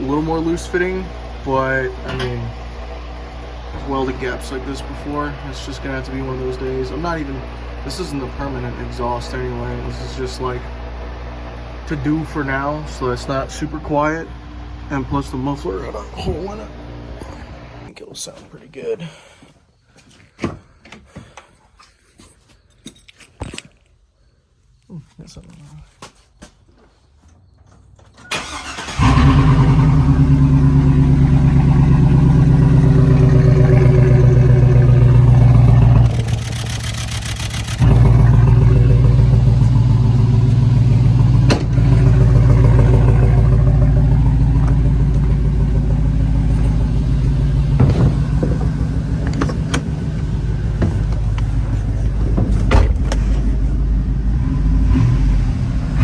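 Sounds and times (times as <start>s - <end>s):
loud engine idling: 0.0s - 17.9s, 28.3s - 56.0s
engine cranking and starting: 28.1s - 53.9s.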